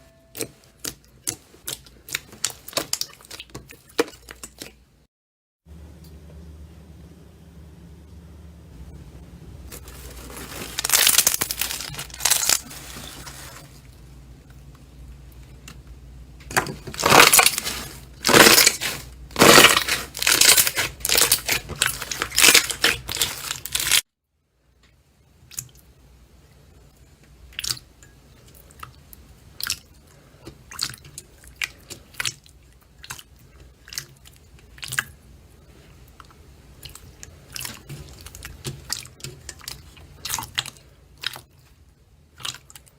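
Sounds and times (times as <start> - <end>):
slime squelching: 0.3 - 5.0, 9.7 - 14.0, 16.5 - 24.0, 27.5 - 42.9.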